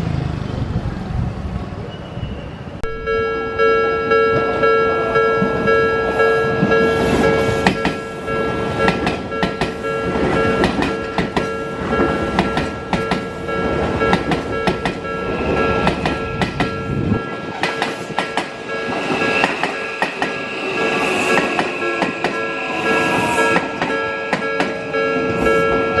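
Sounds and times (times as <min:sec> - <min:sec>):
train low rumble: 0:00.0 - 0:26.0
level crossing warning bell: 0:02.8 - 0:26.0
train wheels clattering over joints: 0:08.8 - 0:22.5.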